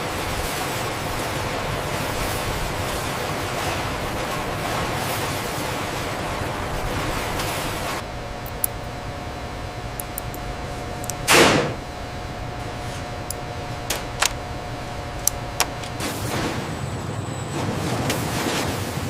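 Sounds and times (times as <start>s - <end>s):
steady machine hum: 0.0s - 19.0s
sharp mechanical clicks: 8.4s - 8.9s, 9.9s - 11.8s, 13.2s - 14.5s, 15.1s - 16.1s.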